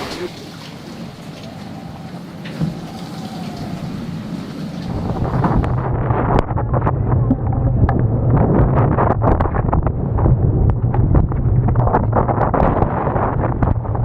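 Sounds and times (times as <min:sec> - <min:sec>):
wind buffeting microphone: 0:00.0 - 0:14.0
steady low hum: 0:03.9 - 0:14.0.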